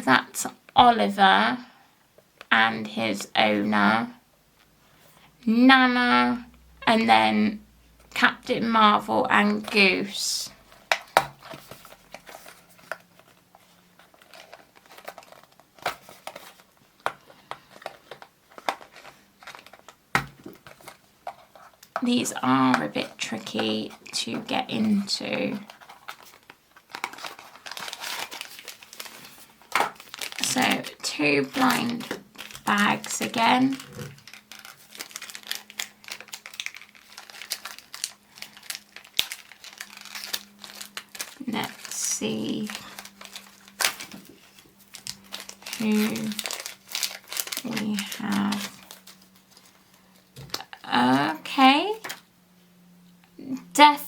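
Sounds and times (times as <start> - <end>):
packaging crinkling: 10.5 - 22.0, 22.8 - 50.9
packaging tearing: 10.8 - 21.8, 25.6 - 50.7.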